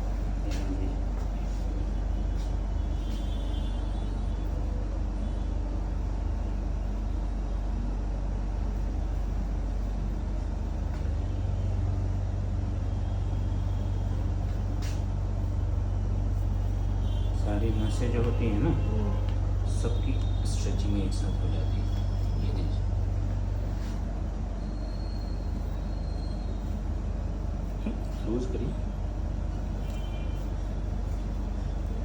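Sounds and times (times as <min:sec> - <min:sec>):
steady low hum: 0:00.0 - 0:32.0.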